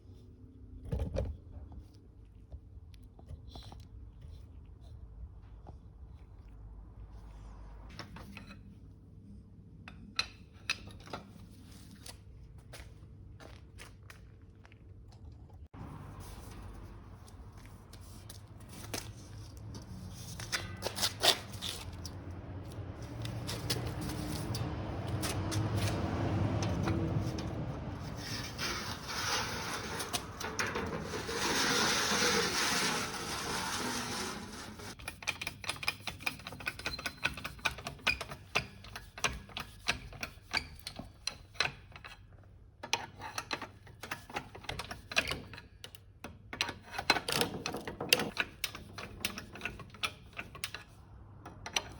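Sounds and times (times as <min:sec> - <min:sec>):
hand tool rubbing and scraping: 0:23.0 - 0:37.3.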